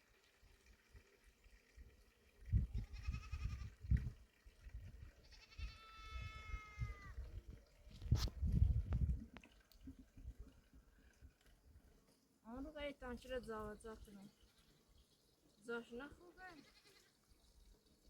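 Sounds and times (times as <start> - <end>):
goat bleating: 5.2 - 7.1.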